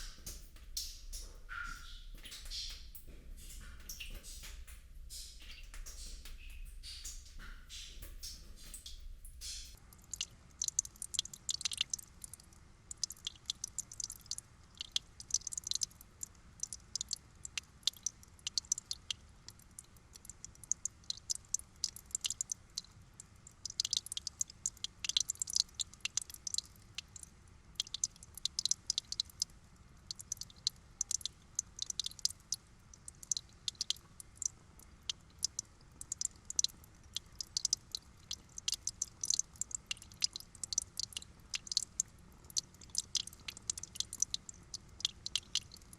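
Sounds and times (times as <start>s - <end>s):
water trickling: 0.0s - 45.9s.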